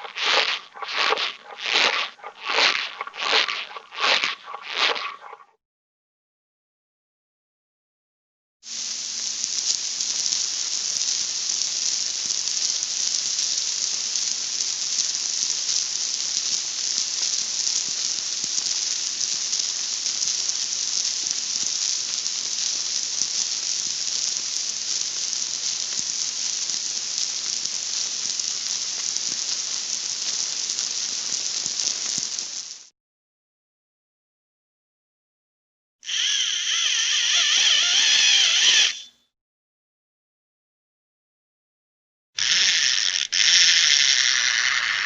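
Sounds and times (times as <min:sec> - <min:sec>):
steady rain falling: 0:08.7 - 0:32.9.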